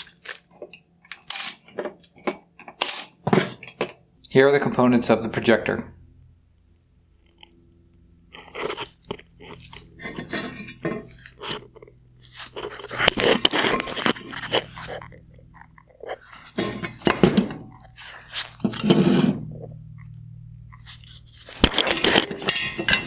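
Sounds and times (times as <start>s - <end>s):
metal and plastic parts clinking: 0.0s - 4.0s.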